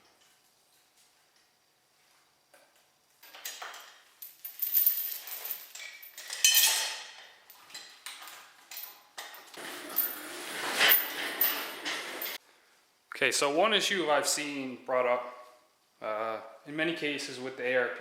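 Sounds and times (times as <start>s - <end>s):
small metal parts clinking: 3.2s - 10.2s.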